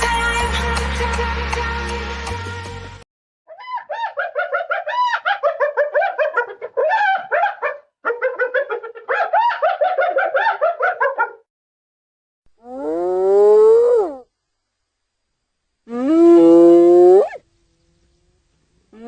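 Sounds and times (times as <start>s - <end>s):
hyena giggling: 8.1s - 9.6s.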